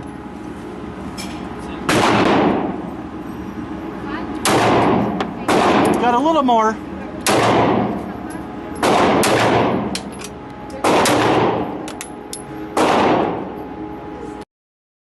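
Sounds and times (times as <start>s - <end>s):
gunshots with ringing tail: 1.9s - 2.8s, 4.4s - 6.0s, 7.2s - 7.9s, 8.8s - 9.9s, 10.8s - 11.8s, 12.8s - 13.5s.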